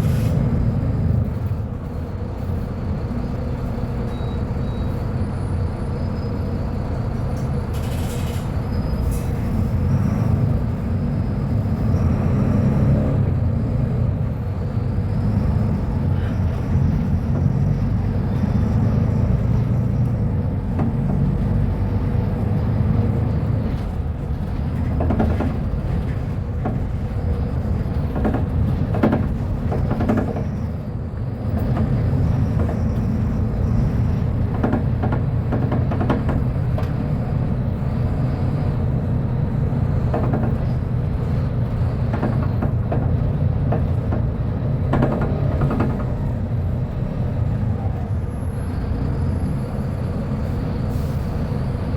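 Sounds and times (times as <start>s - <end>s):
bus engine rumbling: 0.0s - 51.9s
rattles and knocks: 20.6s - 37.6s, 39.5s - 47.0s.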